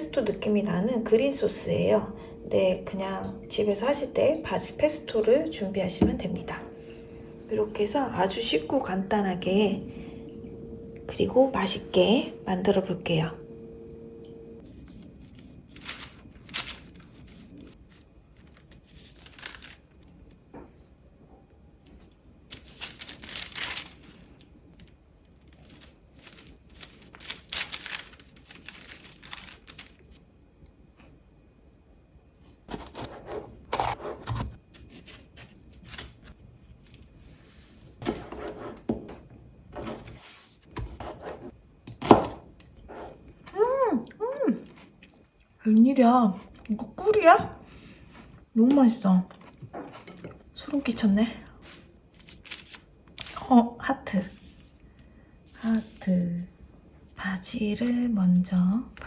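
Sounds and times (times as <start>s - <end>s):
food preparation scrapes and knocks: 38.0s - 41.5s.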